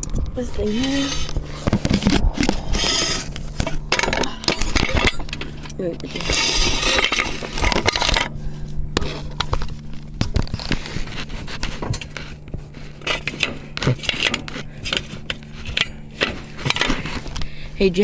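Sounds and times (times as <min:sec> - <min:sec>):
low hum: 0:00.0 - 0:18.0
metal tools scraping and clinking: 0:02.5 - 0:08.3, 0:10.5 - 0:17.4.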